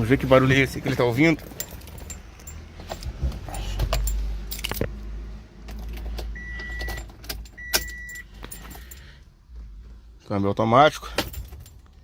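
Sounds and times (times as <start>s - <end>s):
car keys jangling: 0.4s - 5.0s, 5.7s - 9.6s, 11.1s - 12.0s.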